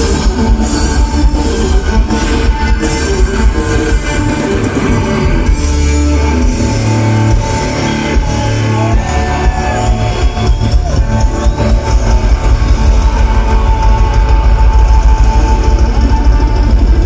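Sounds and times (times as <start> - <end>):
electric guitar: 0.0 - 17.0
steady drum beat: 0.0 - 17.0.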